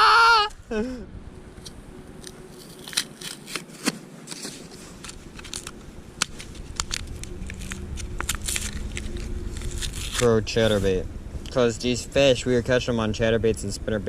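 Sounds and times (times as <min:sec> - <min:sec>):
small clicks and crackles: 0:01.6 - 0:10.3.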